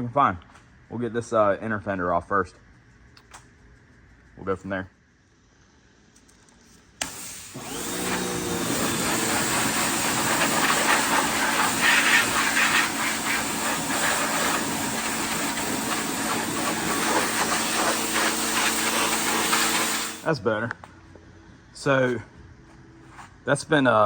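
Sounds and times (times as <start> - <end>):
pressure washer motor humming: 7.0 - 20.3
water spray hissing: 7.0 - 20.3.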